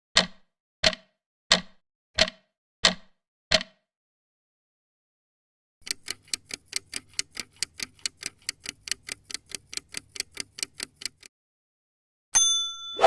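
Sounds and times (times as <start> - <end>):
clock ticking fast: 5.8 - 11.3
ringing ding: 12.4 - 13.0.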